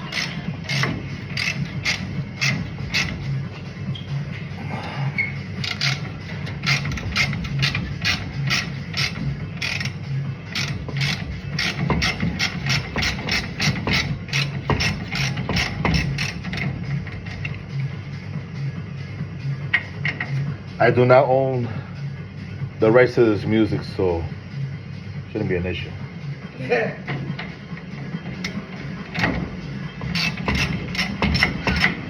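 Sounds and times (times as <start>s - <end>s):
ratchet wrench clicking: 0.0s - 4.0s, 5.2s - 17.6s, 30.0s - 32.0s.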